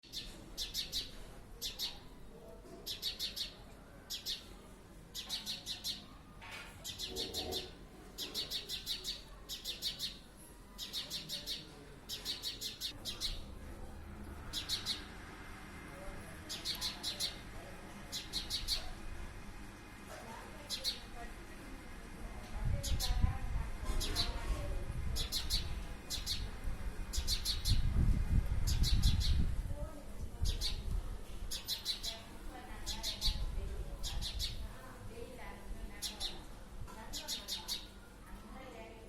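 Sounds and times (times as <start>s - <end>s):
sparrow chirping: 0.0s - 2.1s, 2.8s - 6.2s, 6.8s - 13.5s, 14.4s - 15.2s, 16.4s - 17.5s, 18.1s - 19.0s, 20.6s - 21.2s, 22.8s - 23.2s, 23.9s - 24.4s, 25.2s - 27.9s, 28.6s - 29.5s, 30.4s - 30.9s, 31.5s - 34.7s, 35.9s - 36.5s, 37.1s - 38.0s.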